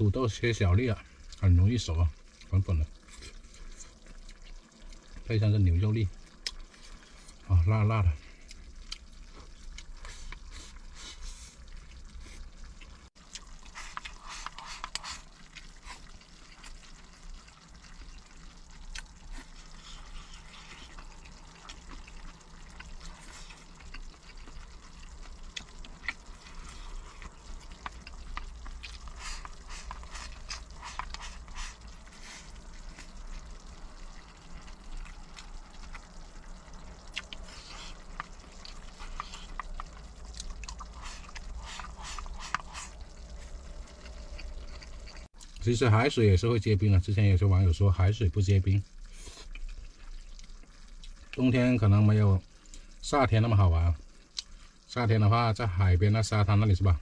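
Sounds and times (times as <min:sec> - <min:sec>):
wet chewing sounds: 0:02.2 - 0:05.3, 0:06.1 - 0:07.5, 0:08.1 - 0:45.7, 0:48.8 - 0:51.4, 0:54.0 - 0:54.9.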